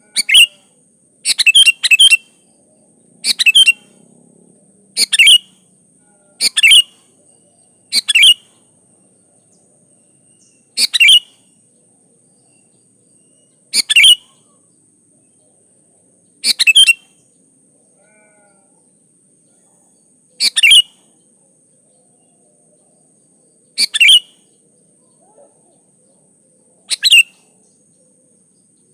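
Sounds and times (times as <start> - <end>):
bulbul calling: 0.0 - 0.6, 1.2 - 2.4, 3.2 - 4.0, 5.0 - 5.6, 6.4 - 8.6, 10.3 - 11.4, 13.2 - 14.6, 16.4 - 17.1, 20.4 - 21.0, 23.7 - 26.2, 26.8 - 28.2.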